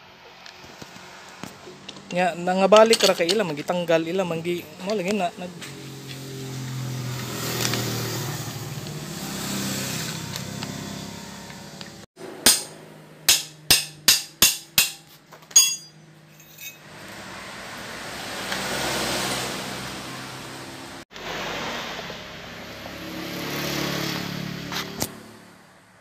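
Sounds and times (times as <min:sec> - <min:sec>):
traffic noise: 0:00.0 - 0:26.0
vehicle engine running: 0:04.4 - 0:13.3.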